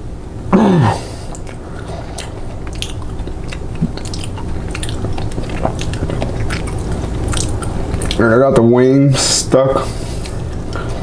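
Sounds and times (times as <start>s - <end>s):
person chewing crunchily: 1.0s - 8.4s.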